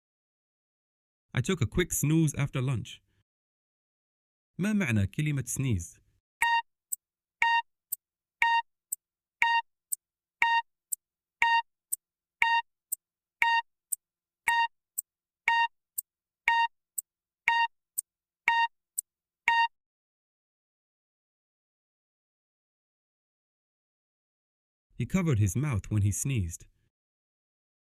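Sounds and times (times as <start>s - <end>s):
short electronic beeps: 6.4s - 6.7s, 7.4s - 7.7s, 8.4s - 8.6s, 9.4s - 9.6s, 10.4s - 10.6s, 11.4s - 11.6s, 12.4s - 12.6s, 13.4s - 13.6s, 14.5s - 14.7s, 15.5s - 15.7s, 16.5s - 16.7s, 17.5s - 17.7s, 18.5s - 18.7s, 19.5s - 19.7s
brief timer tick: 6.4s - 7.6s, 9.4s - 9.6s, 10.4s - 10.6s, 11.4s - 11.6s, 12.4s - 12.6s, 13.4s - 13.6s, 14.5s - 16.7s, 17.5s - 19.7s.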